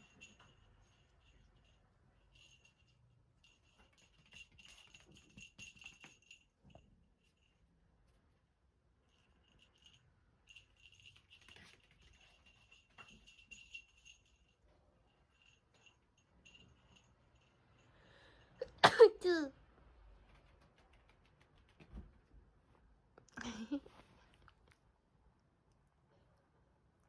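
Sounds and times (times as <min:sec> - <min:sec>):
small bell jingling: 0:00.0 - 0:07.8, 0:09.0 - 0:18.6.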